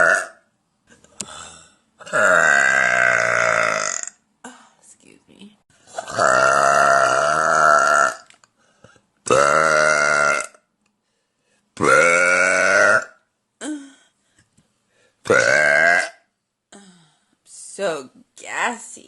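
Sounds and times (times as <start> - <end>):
woman burping: 0.0 - 0.4, 1.2 - 4.7, 5.9 - 8.3, 9.3 - 10.6, 11.8 - 14.0, 15.3 - 16.9.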